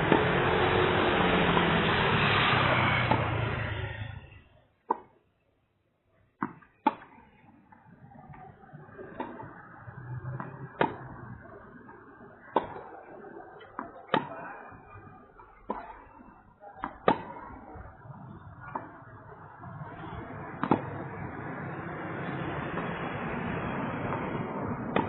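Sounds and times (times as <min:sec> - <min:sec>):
tennis racket hitting ball: 0:03.0 - 0:03.4, 0:04.9 - 0:05.1, 0:06.4 - 0:07.2, 0:09.1 - 0:09.5, 0:10.4 - 0:11.1, 0:12.5 - 0:13.0, 0:13.6 - 0:14.4, 0:15.6 - 0:16.1, 0:16.8 - 0:17.4, 0:20.2 - 0:23.0, 0:24.1 - 0:25.0
tennis ball bounces: 0:03.1 - 0:03.3, 0:04.8 - 0:05.2, 0:06.4 - 0:08.4, 0:09.0 - 0:16.2, 0:16.8 - 0:23.3, 0:24.0 - 0:25.0.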